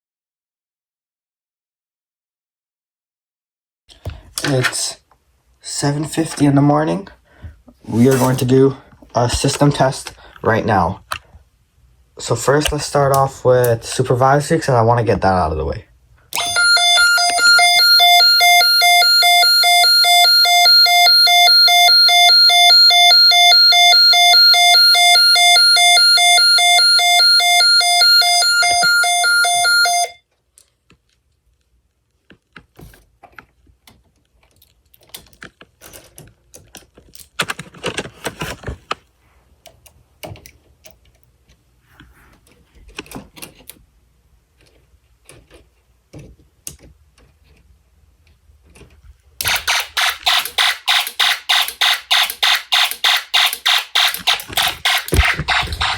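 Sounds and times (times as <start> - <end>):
pulsing electronic alarm tone: 16.4 - 30.2, 50.3 - 55.9.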